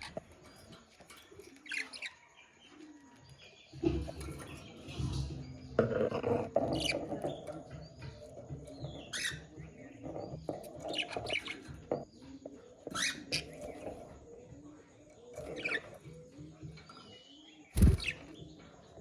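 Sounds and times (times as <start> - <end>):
budgerigars chirping: 12.9 - 13.9, 17.8 - 18.2
budgerigars chattering: 17.8 - 18.2.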